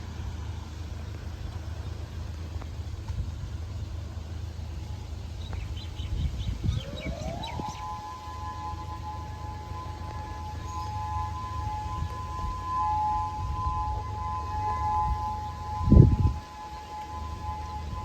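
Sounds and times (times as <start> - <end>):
low rumble: 0.0 - 18.0
warning siren two-note tone: 6.1 - 18.0.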